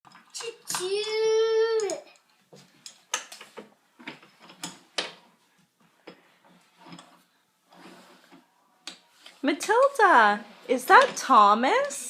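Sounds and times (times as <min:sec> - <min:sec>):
wooden toy train pieces clicking: 0:00.1 - 0:03.5.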